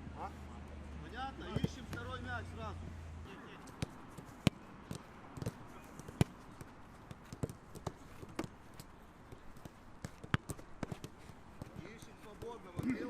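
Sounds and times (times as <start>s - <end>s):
boot kicking football thuds: 3.8s - 13.0s.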